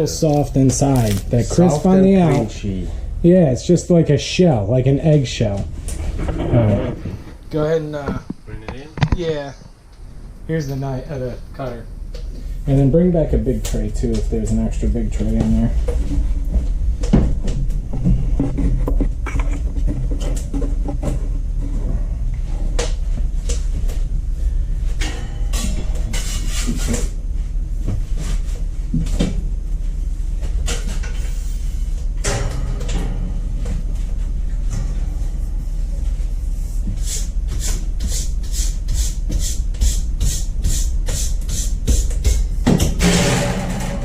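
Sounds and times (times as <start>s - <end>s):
steady low rumble: 0.0s - 44.0s
trays and utensils clattering: 42.7s - 44.0s.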